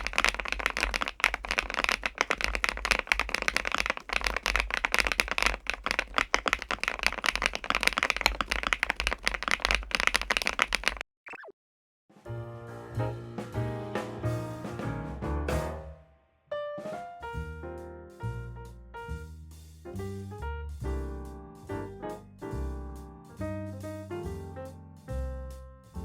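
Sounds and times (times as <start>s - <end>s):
fast mechanical keyboard typing: 0.0s - 11.0s.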